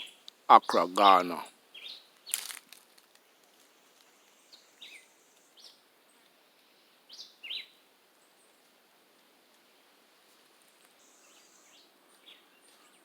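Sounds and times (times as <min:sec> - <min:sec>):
birds chirping: 0:00.0 - 0:02.5, 0:03.3 - 0:08.5, 0:10.9 - 0:13.0
faint steady hiss: 0:00.0 - 0:13.0.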